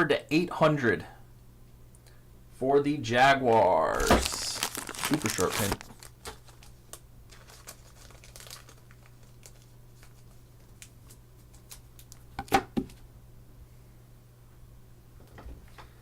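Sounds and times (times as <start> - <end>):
faint hum: 0.0 - 16.0
plastic and paper crinkling: 3.9 - 12.2.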